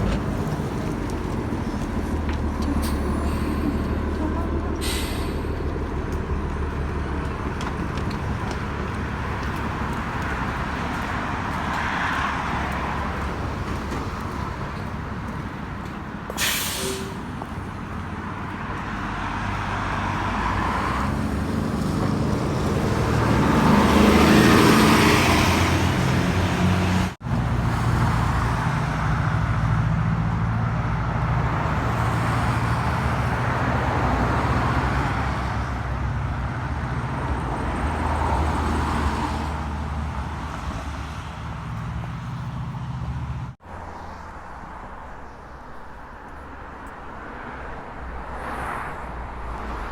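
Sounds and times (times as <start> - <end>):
tyre noise on wet road: 0.0 - 29.6
city street traffic: 0.0 - 49.9
heavy vehicle passing: 0.0 - 49.9
brief sharp hiss: 16.4 - 17.3.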